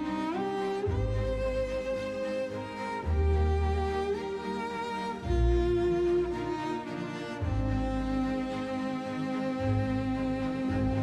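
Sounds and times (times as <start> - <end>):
violin and cello sustained notes: 0.0 - 11.0
deep bass note: 0.8 - 2.0, 9.6 - 11.0.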